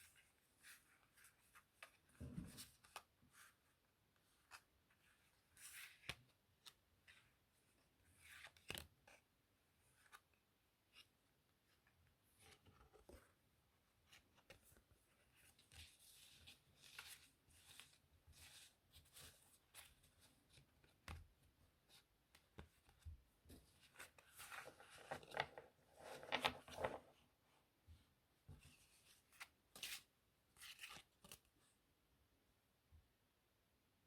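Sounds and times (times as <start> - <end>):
playing cards being handled: 14.0 - 27.2, 28.5 - 31.5.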